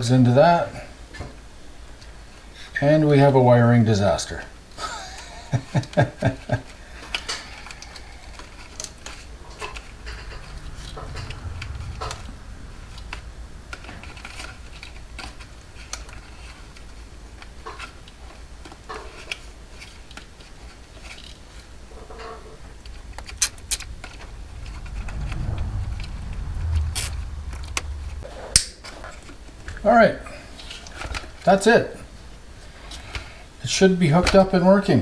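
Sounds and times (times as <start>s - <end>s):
low hum: 6.7s - 16.3s, 21.8s - 28.9s.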